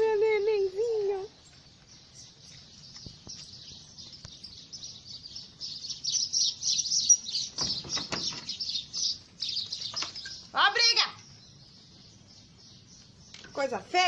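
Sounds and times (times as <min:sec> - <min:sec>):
small birds chirping: 0:00.0 - 0:14.0
harsh bird calls: 0:01.0 - 0:14.0.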